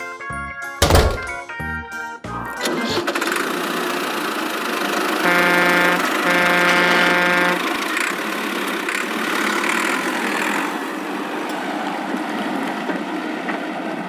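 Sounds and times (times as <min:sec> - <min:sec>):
cartoon horn honk: 0:02.3 - 0:03.1, 0:05.1 - 0:08.0
rough cartoon engine running: 0:02.3 - 0:12.7.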